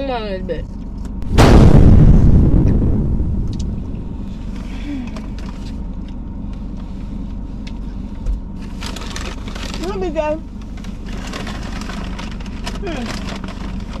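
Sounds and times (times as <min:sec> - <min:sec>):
car cabin engine rumble: 0:00.0 - 0:14.0
loud boom: 0:01.2 - 0:04.6.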